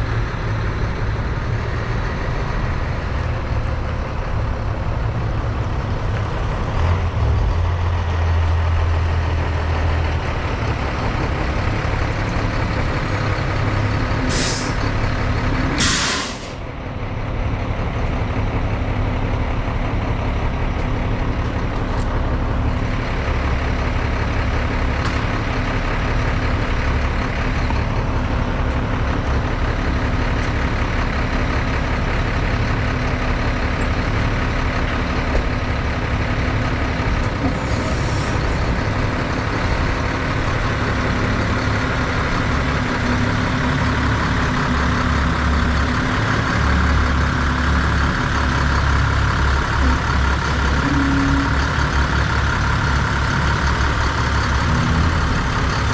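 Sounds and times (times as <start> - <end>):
heavy diesel engine running: 0.0 - 55.9
air hissing bursts: 15.8 - 16.6.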